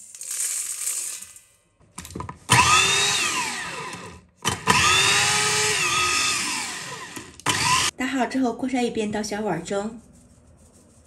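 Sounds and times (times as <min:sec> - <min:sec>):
electric grinder motor whine: 0:02.5 - 0:07.9.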